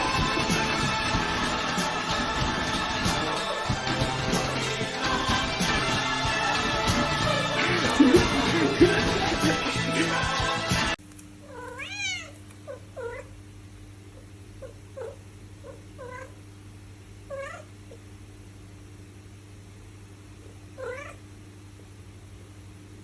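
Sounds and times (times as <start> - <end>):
music: 0.0 - 11.0
steady low hum: 0.0 - 11.6
cat meowing: 11.4 - 13.3, 14.6 - 16.4, 17.3 - 17.7, 20.8 - 21.2.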